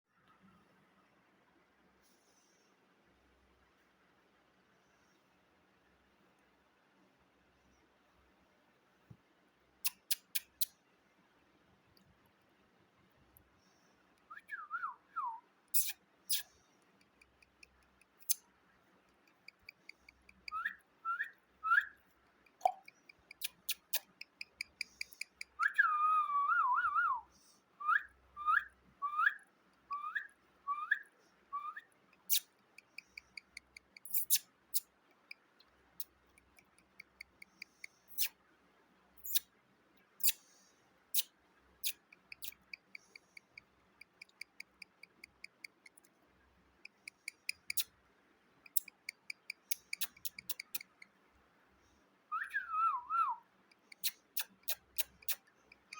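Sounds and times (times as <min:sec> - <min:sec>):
sharp clicks: 0:19.1 - 0:20.6, 0:22.3 - 0:25.6, 0:32.2 - 0:38.3, 0:41.2 - 0:46.1, 0:46.8 - 0:47.9, 0:48.7 - 0:51.1
parrot whistling: 0:27.8 - 0:31.0, 0:31.6 - 0:32.4, 0:52.3 - 0:53.4.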